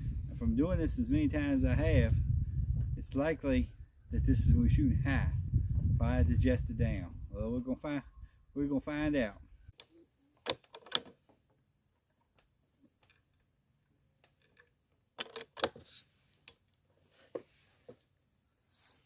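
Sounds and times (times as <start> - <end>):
handling clicks and knocks: 10.4 - 11.4, 12.1 - 13.5, 14.2 - 15.8.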